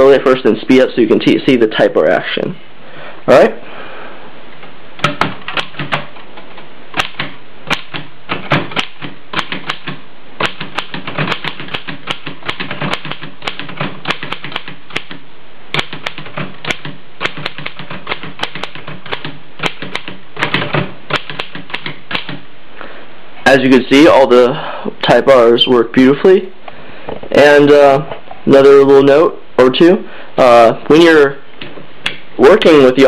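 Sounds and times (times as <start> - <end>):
manual typewriter clacking: 5.0 - 22.4.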